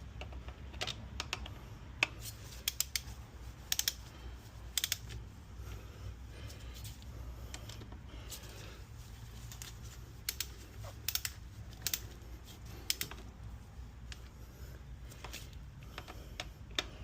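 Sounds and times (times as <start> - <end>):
low steady hum: 0.0 - 17.0
metal parts and tools clicking: 0.2 - 4.1, 4.7 - 5.2, 9.4 - 14.3.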